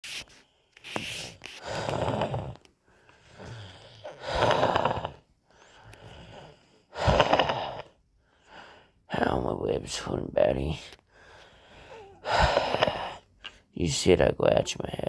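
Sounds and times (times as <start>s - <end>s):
person wheezing breaths: 11.1s - 13.7s.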